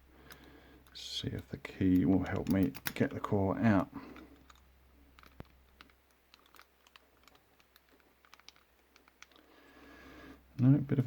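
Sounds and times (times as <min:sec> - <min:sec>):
key clicking in padlock: 0:01.9 - 0:03.2, 0:04.2 - 0:09.4.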